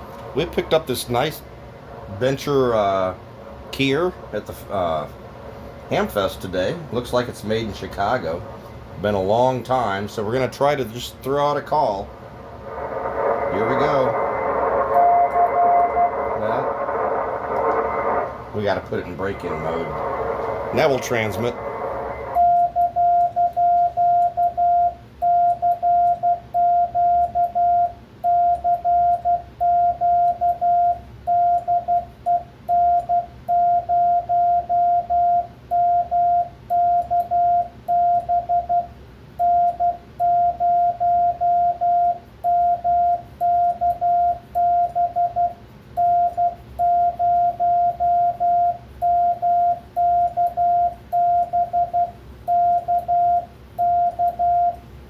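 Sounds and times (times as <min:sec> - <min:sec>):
morse code beeps: 0:19.1 - 0:54.8.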